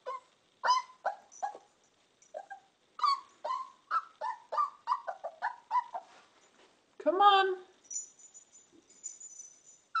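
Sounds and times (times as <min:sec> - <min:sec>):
puppy whimpering: 0:00.0 - 0:01.7, 0:02.3 - 0:06.2.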